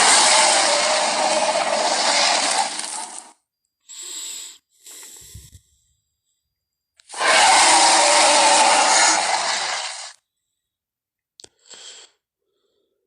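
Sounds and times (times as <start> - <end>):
creature roar: 0.0 - 3.1, 7.1 - 10.1
breathy hisses: 3.9 - 5.6.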